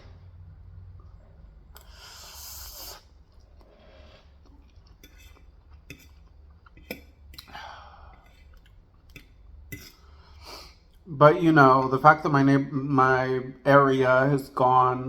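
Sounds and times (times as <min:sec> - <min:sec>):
chewing and lip smacks: 0:02.7 - 0:07.6, 0:08.2 - 0:09.6
breathy exhale: 0:07.5 - 0:08.2.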